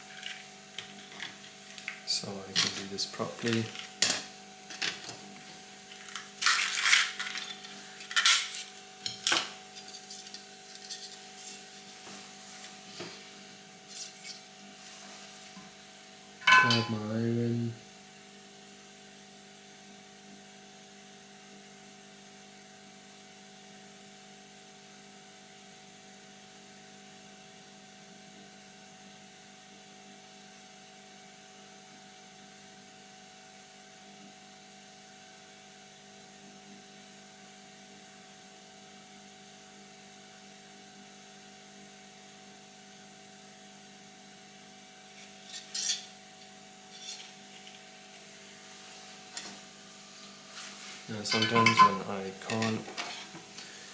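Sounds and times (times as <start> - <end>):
electrical hum and hiss: 0.0 - 18.0, 44.5 - 53.9.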